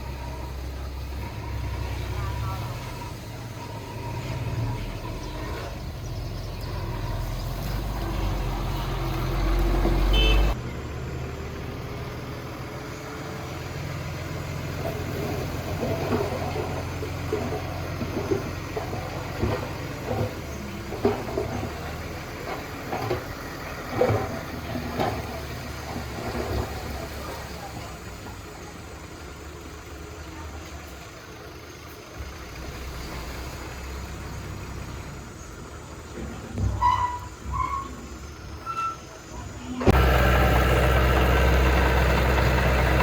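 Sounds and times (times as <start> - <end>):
heavy diesel engine rumbling: 0.0 - 43.0
low engine rumble: 0.0 - 43.0
knocks and clanks: 14.8 - 26.9.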